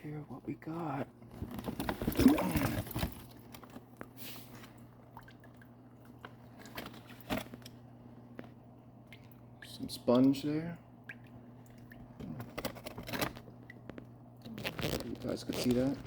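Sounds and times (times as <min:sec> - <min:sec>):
steady low hum: 0:00.0 - 0:16.0
packaging rustling: 0:01.3 - 0:03.9, 0:14.5 - 0:16.0.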